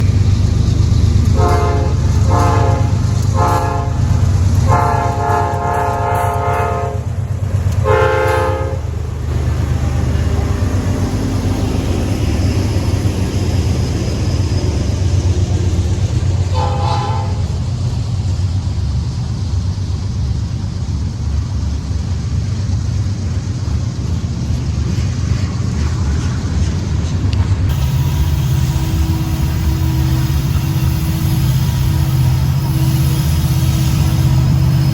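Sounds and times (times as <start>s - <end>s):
low rumble of train: 0.0s - 34.9s
locomotive air horn blasts: 1.3s - 7.2s, 7.8s - 8.9s, 16.5s - 17.6s, 27.7s - 34.9s.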